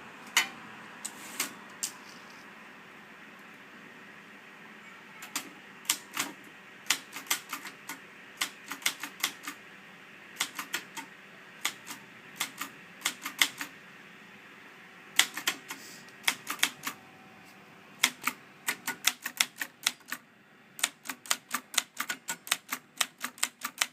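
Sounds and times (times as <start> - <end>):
typewriter keys striking: 5.3 - 9.6, 10.4 - 11.0, 11.6 - 13.7, 15.2 - 17.0, 18.0 - 20.2, 20.8 - 23.9.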